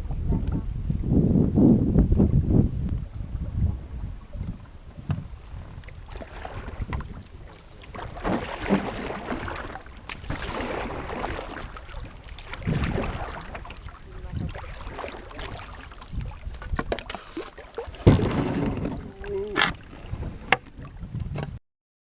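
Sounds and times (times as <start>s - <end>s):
wind rumble on microphone: 0.0s - 21.6s
paddle strokes splashing water: 3.4s - 21.1s.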